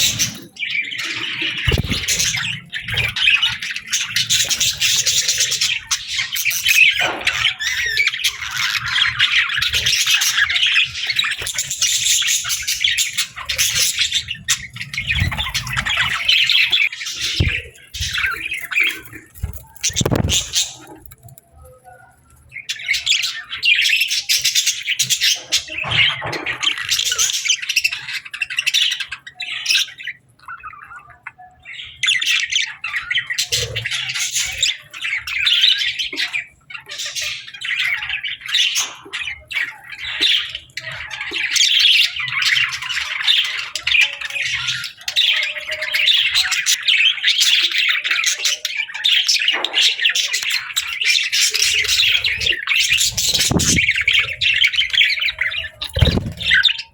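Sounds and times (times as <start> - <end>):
budgerigars chattering and squawking: 0.0 - 56.9.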